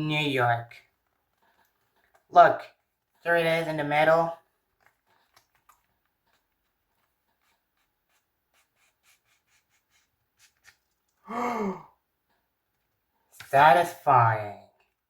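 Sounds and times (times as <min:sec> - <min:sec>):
person sighing or humming: 0:11.2 - 0:12.0.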